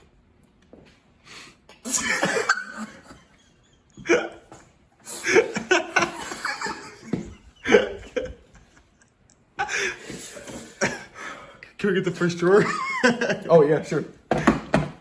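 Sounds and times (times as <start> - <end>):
people laughing: 1.9 - 4.5, 5.2 - 11.2, 12.4 - 13.7.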